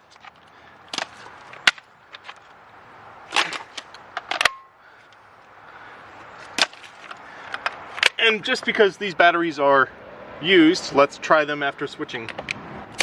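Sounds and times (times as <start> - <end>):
tools clicking and knocking: 3.3 - 4.7.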